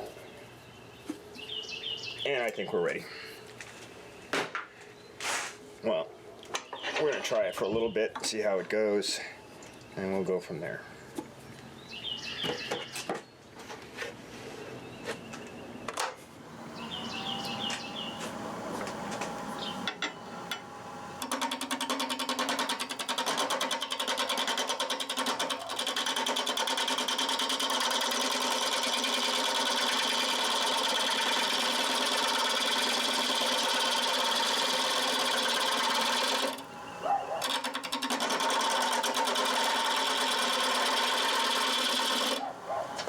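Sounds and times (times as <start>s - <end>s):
wood lathe humming: 16.5s - 42.5s.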